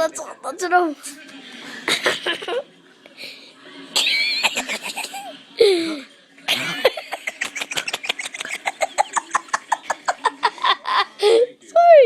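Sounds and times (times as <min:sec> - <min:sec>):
laughter: 0:01.8 - 0:02.7, 0:03.9 - 0:05.4, 0:06.5 - 0:11.4.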